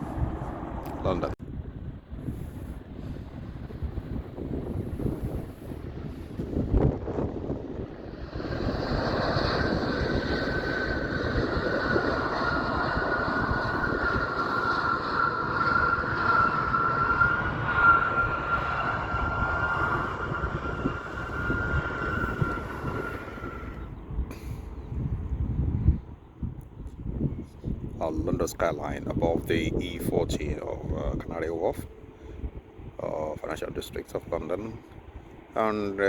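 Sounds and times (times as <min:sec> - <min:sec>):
jet engines whining: 0:00.0 - 0:26.5
wind buffeting microphone: 0:00.0 - 0:36.0.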